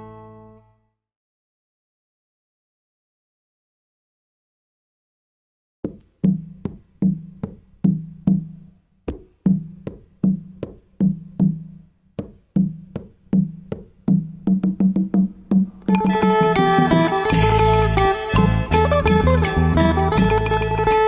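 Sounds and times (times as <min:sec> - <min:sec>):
percussive beat with low tone: 0:05.9 - 0:21.0.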